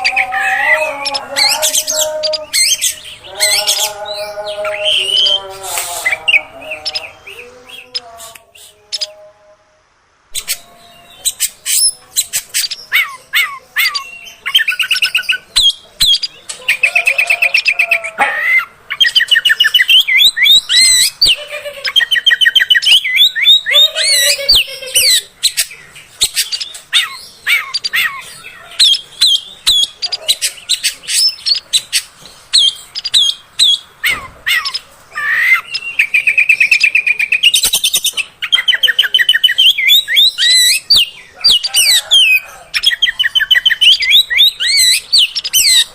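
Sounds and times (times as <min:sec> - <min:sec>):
magpie-robin singing: 0:00.0 - 0:09.2, 0:10.3 - 0:45.9.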